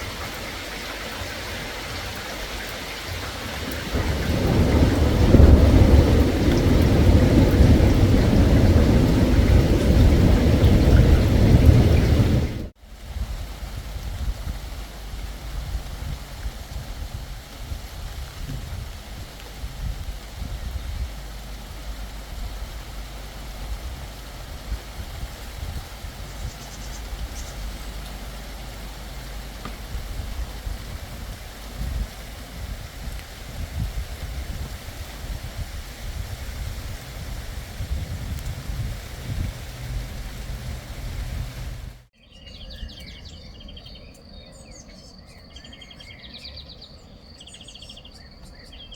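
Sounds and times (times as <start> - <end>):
rain falling: 0.0 - 42.1
rolling thunder: 2.0 - 12.8, 22.1 - 42.1.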